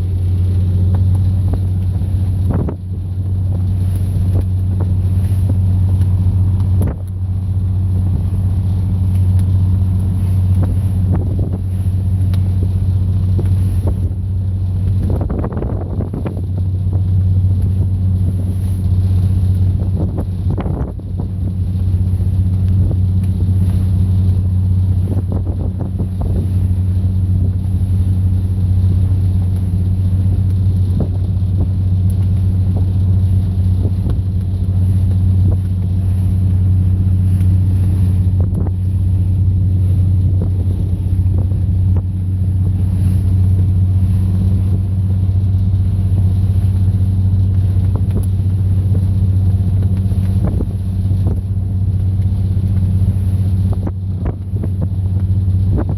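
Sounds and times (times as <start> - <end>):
boat engine humming: 0.0 - 55.9
wind buffeting microphone: 0.0 - 55.9.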